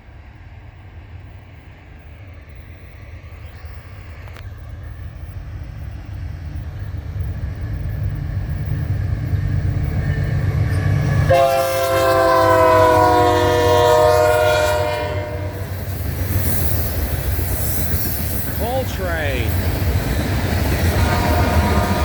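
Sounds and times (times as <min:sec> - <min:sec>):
diesel locomotive engine rumble: 0:00.0 - 0:22.0
train air horn: 0:11.3 - 0:15.7, 0:20.9 - 0:22.0.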